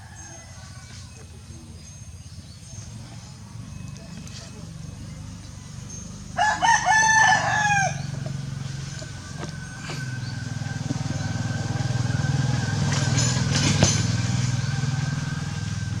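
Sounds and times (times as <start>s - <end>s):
rooster crowing: 0.0s - 1.1s, 6.3s - 16.0s
engine running with low throb: 0.9s - 16.0s.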